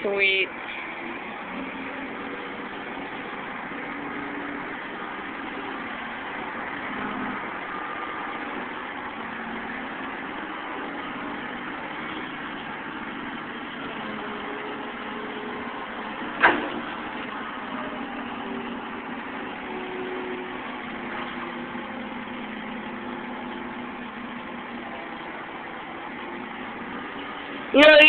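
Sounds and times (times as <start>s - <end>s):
excavator diesel engine running: 0.0s - 28.0s.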